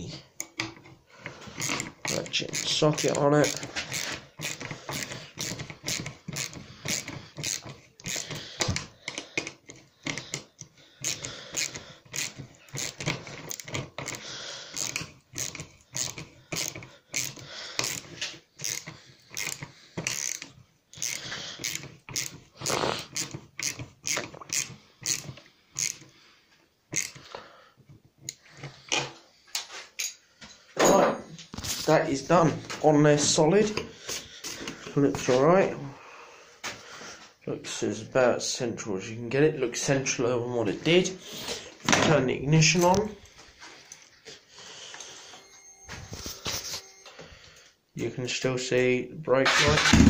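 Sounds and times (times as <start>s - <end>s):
ratchet wrench clicking: 1.6s - 22.4s, 23.1s - 26.1s, 26.9s - 27.2s, 30.0s - 30.2s.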